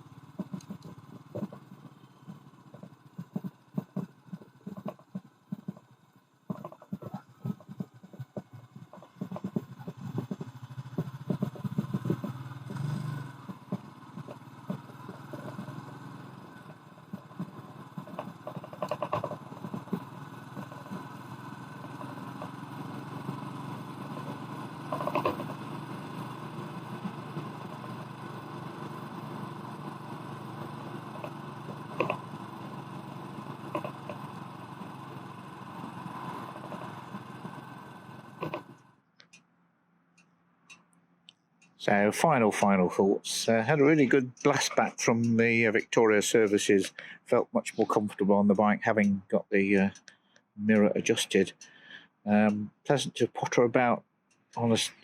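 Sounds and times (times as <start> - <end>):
motorcycle engine running: 0.0 - 39.4, 41.6 - 52.8
sharp clicks: 0.4 - 1.7.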